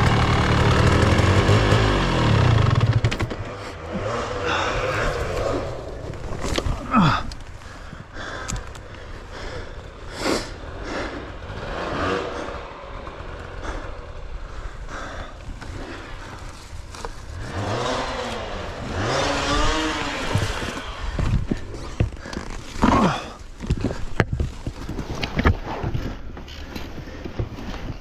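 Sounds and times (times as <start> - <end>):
dirt bike engine revving: 0.0 - 23.3
bike knocking over rough terrain: 4.5 - 9.0.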